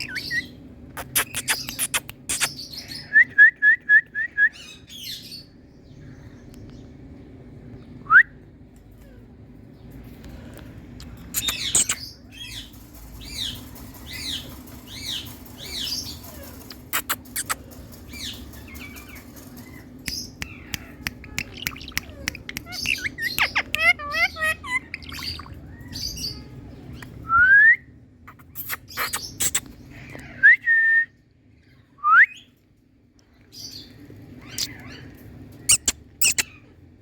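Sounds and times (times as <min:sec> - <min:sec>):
parrot clicking chatter: 0:00.9 - 0:02.6, 0:11.1 - 0:12.1, 0:12.9 - 0:25.5, 0:35.7 - 0:36.5
parrot squawking calls: 0:20.4 - 0:26.6, 0:34.4 - 0:36.7.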